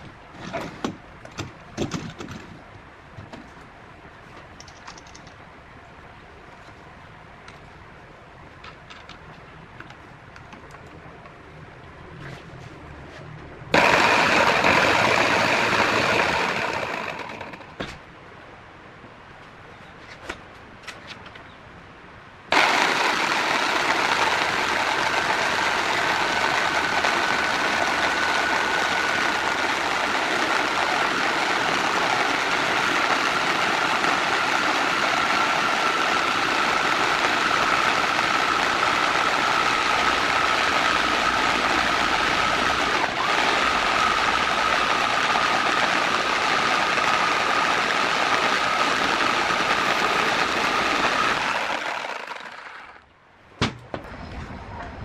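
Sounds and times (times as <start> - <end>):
power tool motor whine: 13.8 - 17.8, 22.5 - 53.0.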